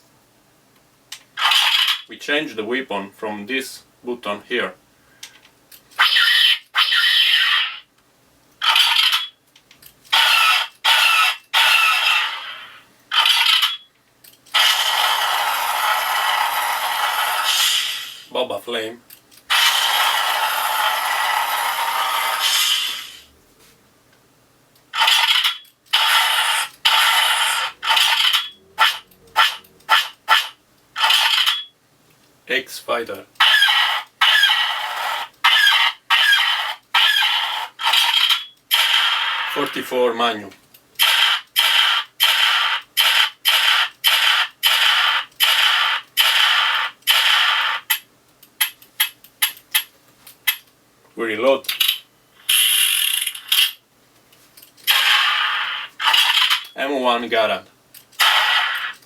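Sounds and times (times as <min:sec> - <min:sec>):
blaster sound effect bursts: 0:14.6 - 0:18.3, 0:19.5 - 0:23.3, 0:25.0 - 0:31.6, 0:33.4 - 0:39.8, 0:41.0 - 0:48.0, 0:54.9 - 0:56.6, 0:58.2 - 0:59.0.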